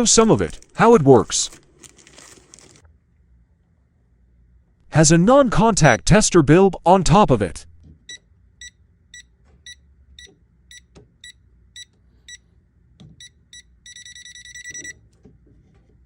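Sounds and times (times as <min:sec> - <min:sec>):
voltage tester beeping: 0:13.2 - 0:15.0.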